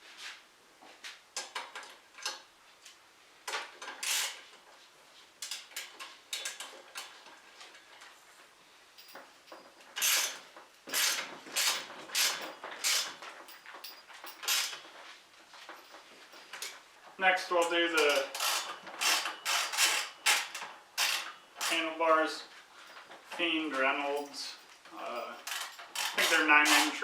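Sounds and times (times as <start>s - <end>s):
metal bike parts clinking: 5.4s - 8.2s, 9.0s - 22.2s, 22.8s - 27.0s.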